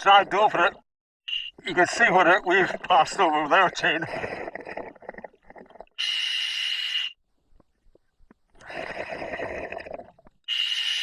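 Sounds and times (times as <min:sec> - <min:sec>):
diver inhaling through regulator: 0:08.6 - 0:11.0.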